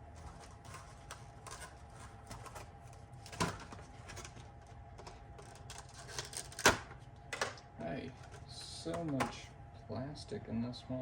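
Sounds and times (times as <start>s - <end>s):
packaging rustling: 0.0s - 6.7s.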